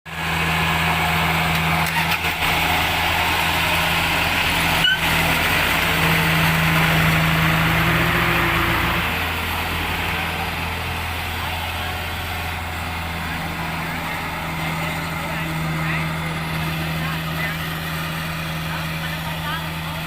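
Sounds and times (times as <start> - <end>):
combine harvester diesel engine: 0.1 - 20.0.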